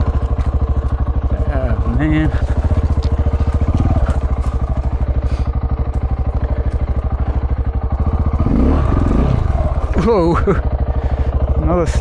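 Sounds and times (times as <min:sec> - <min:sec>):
brush ticking against motorcycle: 0:00.0 - 0:08.3
motorcycle engine running: 0:00.0 - 0:12.0.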